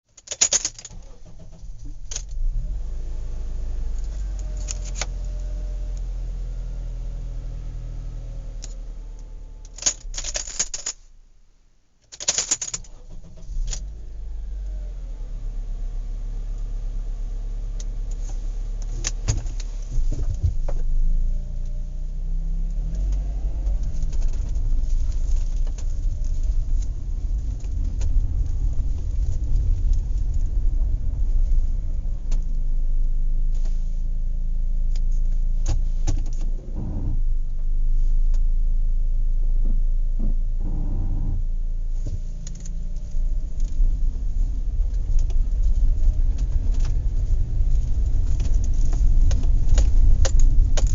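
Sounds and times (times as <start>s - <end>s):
low rumble: 0.9s - 11.9s, 13.1s - 50.9s
knocks and clatter: 42.2s - 50.9s.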